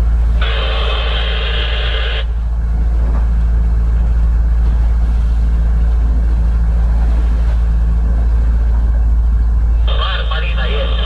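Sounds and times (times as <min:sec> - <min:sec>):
boat engine rumbling: 0:00.0 - 0:11.0
radio static hiss: 0:00.4 - 0:02.3, 0:09.9 - 0:11.0.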